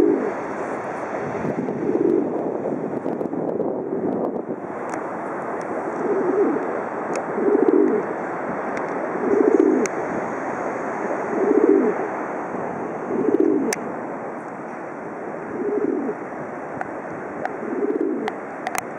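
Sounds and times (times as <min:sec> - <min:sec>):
pigeon cooing: 0:00.0 - 0:00.4, 0:05.8 - 0:08.1, 0:09.2 - 0:09.9, 0:11.3 - 0:12.1, 0:13.1 - 0:13.8, 0:15.3 - 0:16.3, 0:17.4 - 0:18.4
surf hissing: 0:00.0 - 0:03.3, 0:04.0 - 0:18.9.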